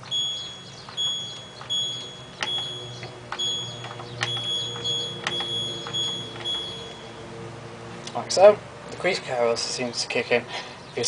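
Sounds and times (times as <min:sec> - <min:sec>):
short high beeps: 0:00.0 - 0:07.1.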